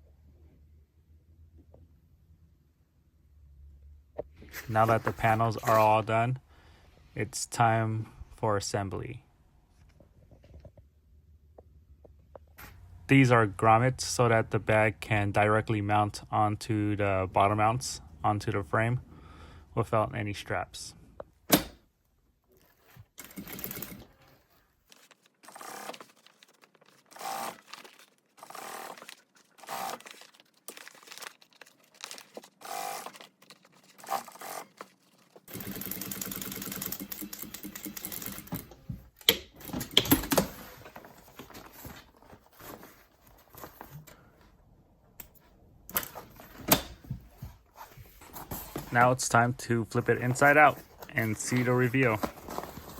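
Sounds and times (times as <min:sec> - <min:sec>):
sewing machine stitching: 0:23.2 - 0:24.2, 0:27.1 - 0:27.6, 0:28.4 - 0:29.0, 0:29.6 - 0:30.0, 0:32.6 - 0:33.2, 0:35.5 - 0:38.8.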